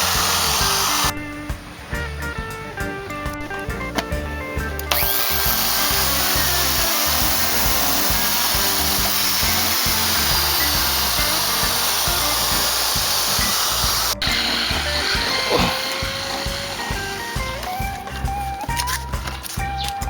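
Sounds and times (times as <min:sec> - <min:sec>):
drill grinding through pot: 0:00.0 - 0:01.1, 0:04.9 - 0:18.3
background music: 0:00.0 - 0:20.0.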